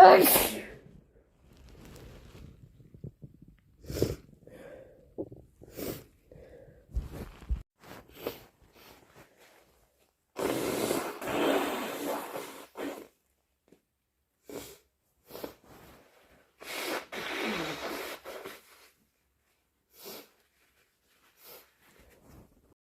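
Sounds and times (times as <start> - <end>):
person sneezing: 0.0 - 0.8
sharp breaths or sniffs: 16.6 - 18.9, 19.9 - 20.5.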